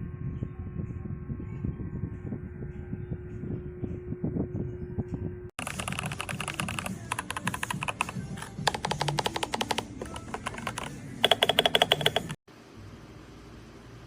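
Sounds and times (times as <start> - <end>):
mechanical keyboard typing: 5.6 - 12.4.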